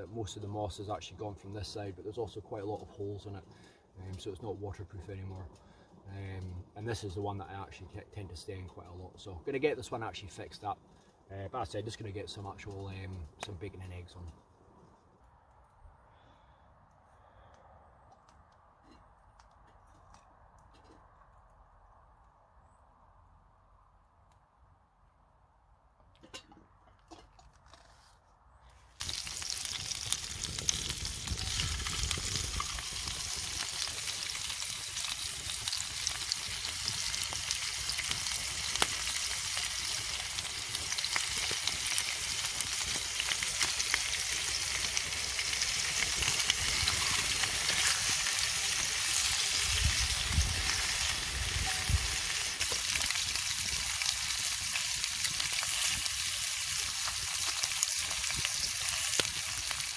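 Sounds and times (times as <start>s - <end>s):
bacon and eggs sizzling in a pan: 29.0s - 59.9s.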